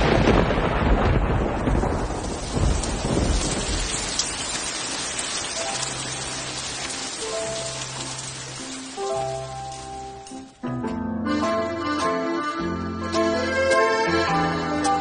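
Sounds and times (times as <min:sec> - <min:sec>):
thunder rumbling: 0:00.0 - 0:08.9
steady rain: 0:00.0 - 0:10.6
sustained music notes: 0:07.3 - 0:15.0.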